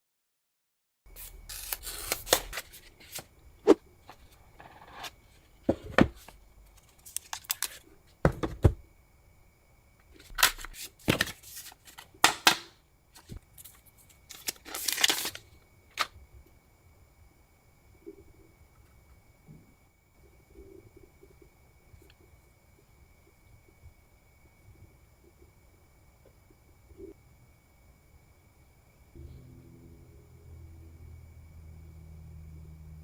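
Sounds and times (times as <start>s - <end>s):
wrapper tearing and crinkling: 1.5s - 3.2s, 14.3s - 15.4s
box clicks and knocks: 8.2s - 8.8s.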